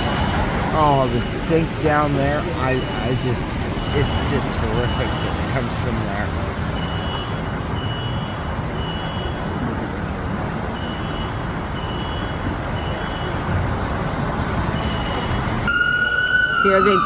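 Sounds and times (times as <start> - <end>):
fire truck siren: 0.0 - 17.0
street traffic rumble: 0.0 - 17.0
fire alarm high-pitched beeps: 6.7 - 9.5, 10.8 - 13.5, 14.7 - 17.0.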